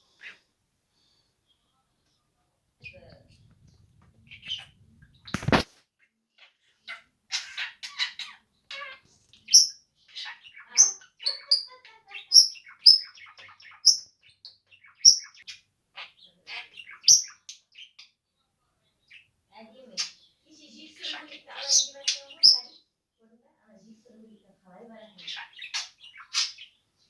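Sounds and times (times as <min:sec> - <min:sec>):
budgerigar chirping and chattering: 0:02.8 - 0:18.2, 0:19.0 - 0:22.9, 0:24.9 - 0:27.0.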